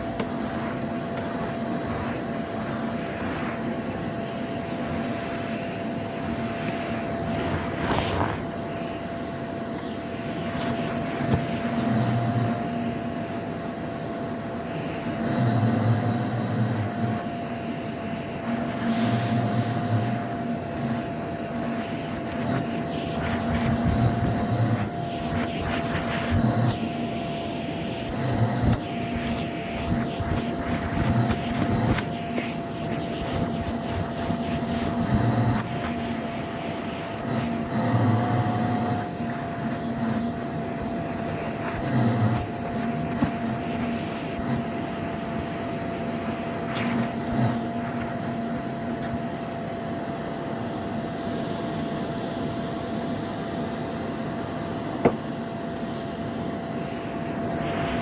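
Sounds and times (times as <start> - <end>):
vacuum cleaner motor whining: 0.0 - 58.0.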